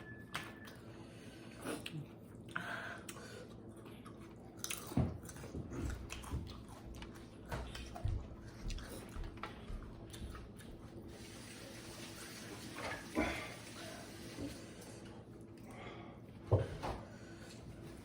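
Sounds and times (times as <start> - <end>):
person chewing and biting food: 1.6 - 10.9.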